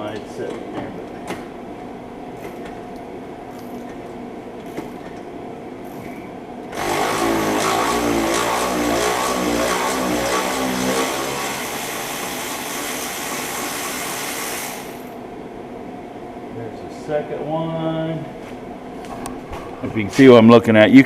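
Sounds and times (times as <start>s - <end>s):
power tool motor running: 6.7s - 15.2s.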